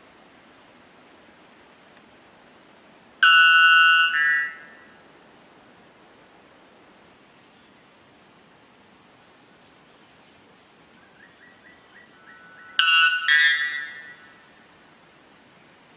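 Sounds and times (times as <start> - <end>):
bird loud ringing metallic call: 3.2 - 4.9, 12.5 - 14.5.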